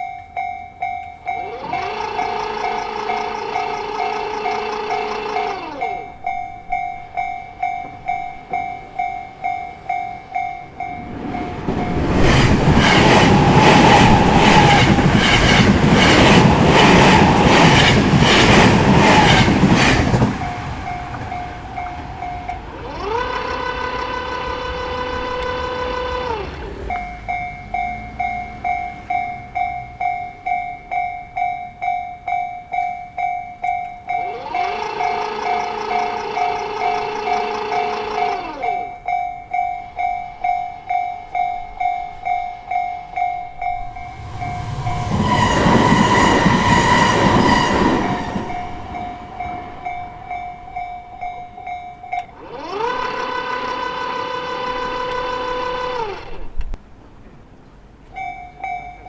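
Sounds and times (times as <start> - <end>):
crossing warning bell ringing: 0.0 - 56.6, 58.0 - 59.0
train wheels clattering over joints: 1.3 - 29.9, 43.2 - 53.7
pitched whine: 10.6 - 27.3, 43.5 - 51.6.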